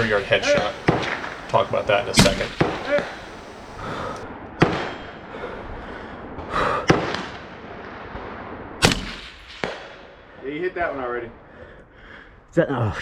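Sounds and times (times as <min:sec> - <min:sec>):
faint crack: 0:00.0 - 0:04.2
rifle shots: 0:00.0 - 0:04.2.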